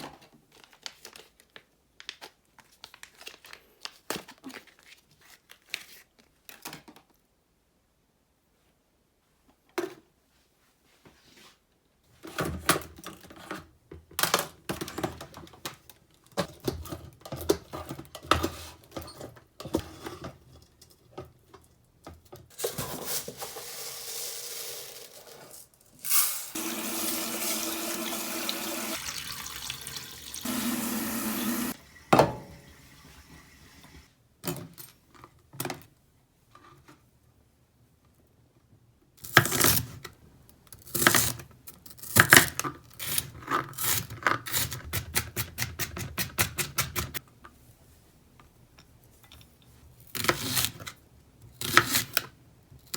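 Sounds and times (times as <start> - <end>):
tap running into sink: 26.6 - 32.7.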